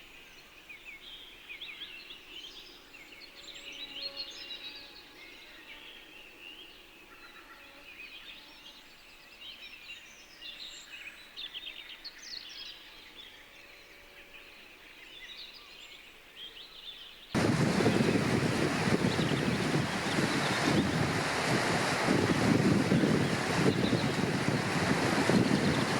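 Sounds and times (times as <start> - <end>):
birds chirping and singing: 17.4 - 25.9
surf and wind rushing: 17.4 - 25.9.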